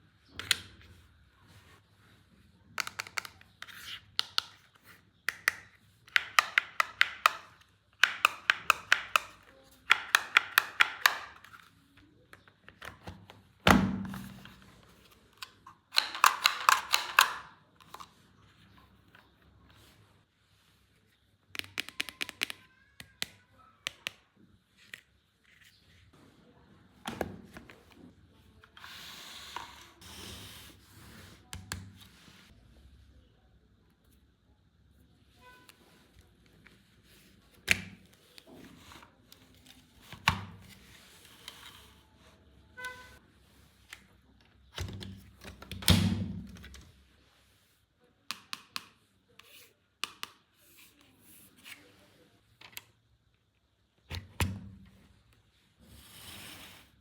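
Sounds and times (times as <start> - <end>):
plastic toy pieces clicking: 5.3 - 11.5, 15.9 - 18.0.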